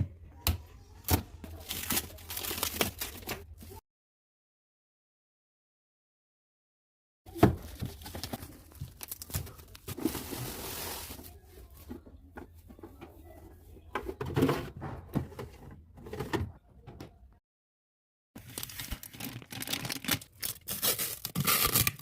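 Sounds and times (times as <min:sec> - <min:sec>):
packaging rustle: 0:18.4 - 0:22.0.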